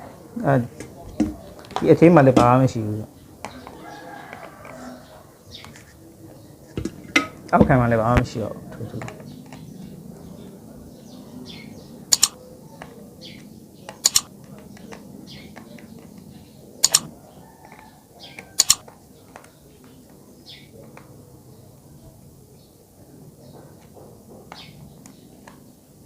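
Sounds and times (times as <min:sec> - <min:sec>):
kettle parts double clicks: 0:12.1 - 0:12.4, 0:14.0 - 0:14.3, 0:16.8 - 0:17.1, 0:18.6 - 0:18.8.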